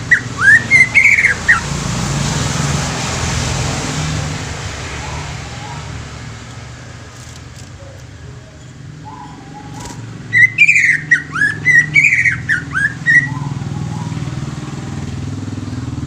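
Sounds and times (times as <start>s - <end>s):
bird whistling song: 0.0s - 1.7s, 7.8s - 14.2s.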